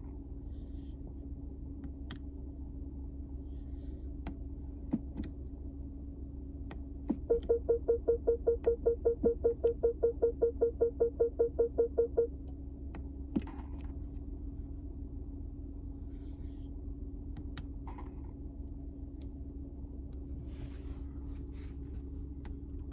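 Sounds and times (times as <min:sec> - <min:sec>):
car engine humming: 0:00.0 - 0:22.9
car warning chime beeping: 0:07.2 - 0:12.4.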